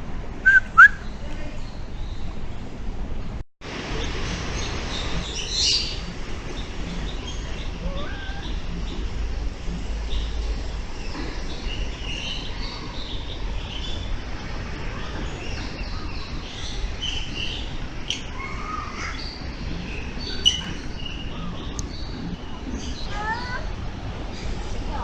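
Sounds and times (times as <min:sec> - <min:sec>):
steady low rumble: 0:00.0 - 0:25.0
birds chirping and calling: 0:04.0 - 0:23.6.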